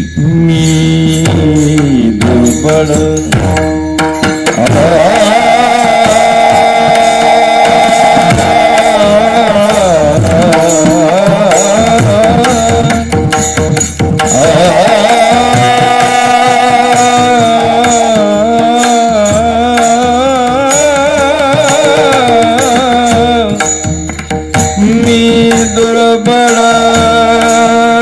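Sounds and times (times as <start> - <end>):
hand-drum strokes: 0.0 - 28.0
man singing long ornamented notes: 0.0 - 28.0
steady drone: 4.6 - 10.6.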